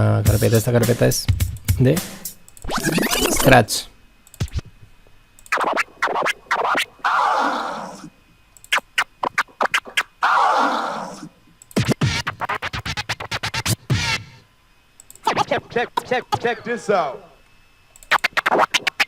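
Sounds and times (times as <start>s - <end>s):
vinyl record scratches: 2.6s - 3.6s, 4.4s - 4.6s, 5.5s - 8.1s, 8.7s - 14.4s, 15.2s - 16.7s, 18.1s - 19.0s.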